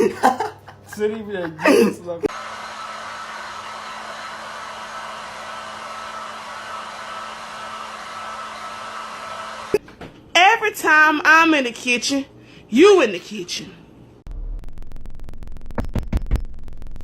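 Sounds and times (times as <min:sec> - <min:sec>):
faint constant hum: 0:00.0 - 0:02.3, 0:09.8 - 0:14.2.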